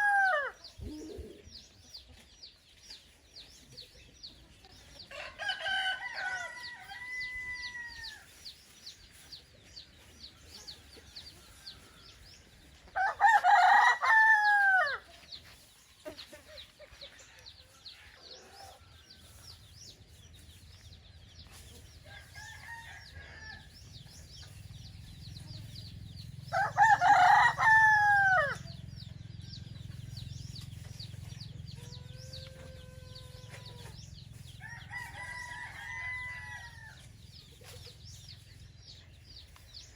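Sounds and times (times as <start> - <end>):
roosters crowing: 0.0 - 1.4, 4.8 - 8.6, 9.8 - 15.2, 21.4 - 39.0
low steady rumble: 24.1 - 34.9.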